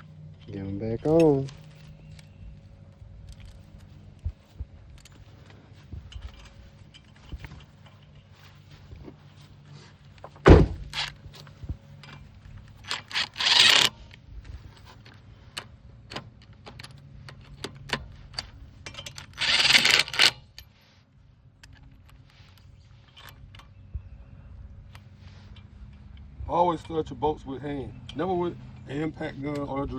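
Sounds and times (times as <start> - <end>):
metal lug nuts clinking: 0.4 - 2.4, 10.8 - 20.8
heavy thunk: 10.4 - 10.9
rasping bursts: 12.8 - 14.2, 19.2 - 20.5.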